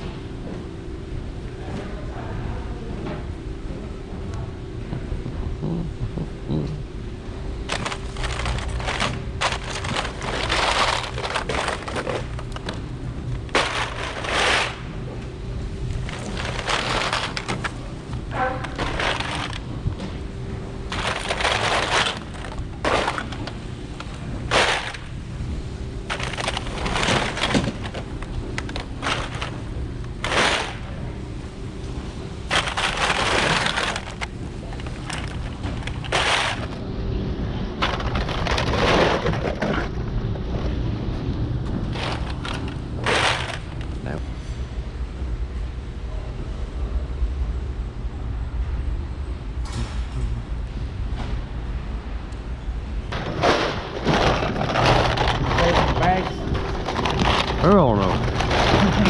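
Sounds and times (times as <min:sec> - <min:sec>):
steady machine hum: 0:00.0 - 0:59.0
scrap metal crashing: 0:07.7 - 0:12.7, 0:13.4 - 0:15.0, 0:16.0 - 0:19.7, 0:20.9 - 0:25.2, 0:26.1 - 0:31.0, 0:32.5 - 0:36.8, 0:37.8 - 0:40.0, 0:41.9 - 0:44.2, 0:53.2 - 0:59.0.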